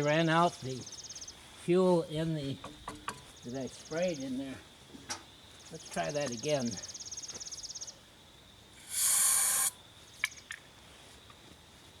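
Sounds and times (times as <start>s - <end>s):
high insect trill: 0.0s - 12.0s
aerosol spray hiss: 8.8s - 9.8s.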